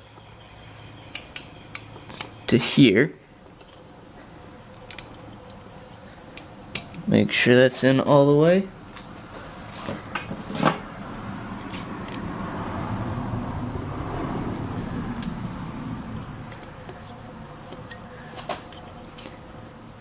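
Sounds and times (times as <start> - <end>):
rustling scrape: 9.1 - 10.8.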